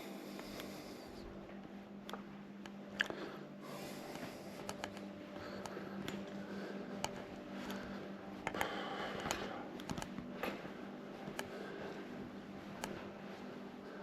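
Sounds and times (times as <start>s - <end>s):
steady low hum: 0.0s - 14.0s
light clicks and taps: 4.1s - 12.0s, 12.6s - 13.1s.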